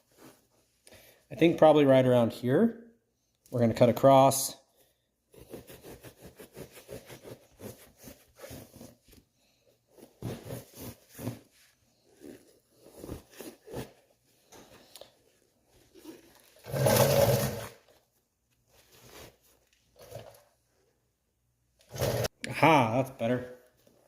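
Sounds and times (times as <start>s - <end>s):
bread knife sawing through foam: 5.3s - 9.0s.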